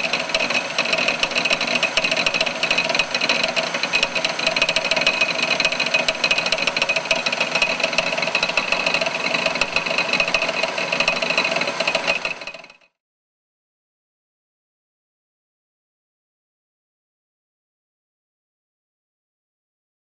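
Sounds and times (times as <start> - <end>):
engine knocking rattle: 0.0 - 13.0.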